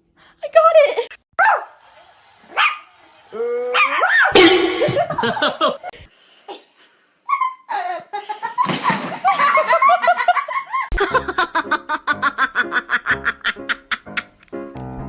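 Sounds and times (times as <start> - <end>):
person laughing and giggling: 4.4 - 6.0, 7.4 - 14.4.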